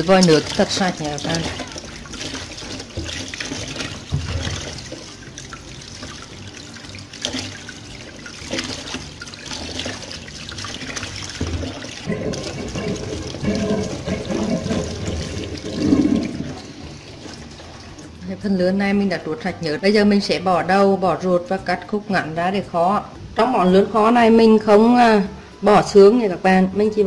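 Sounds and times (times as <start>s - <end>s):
tap water running: 0.0s - 19.5s.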